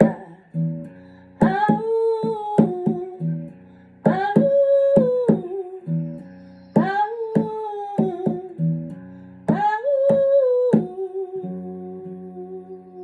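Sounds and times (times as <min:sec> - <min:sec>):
guitar chords: 0:00.0 - 0:13.0.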